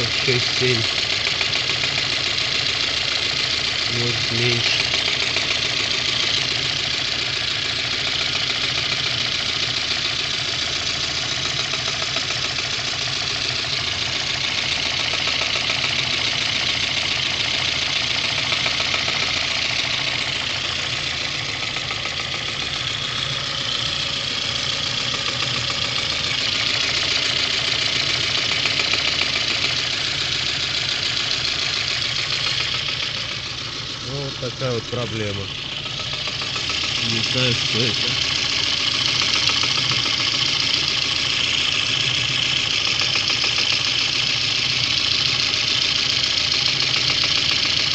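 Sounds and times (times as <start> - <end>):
car engine running: 0.0 - 47.9
engine knock: 0.0 - 47.9.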